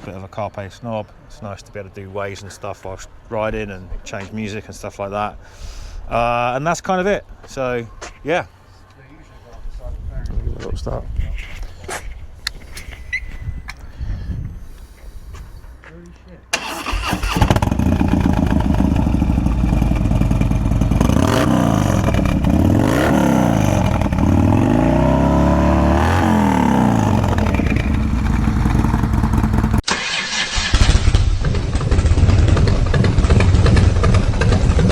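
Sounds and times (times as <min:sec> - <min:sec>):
motorcycle engine revving: 0:16.6 - 0:29.8, 0:30.5 - 0:34.9.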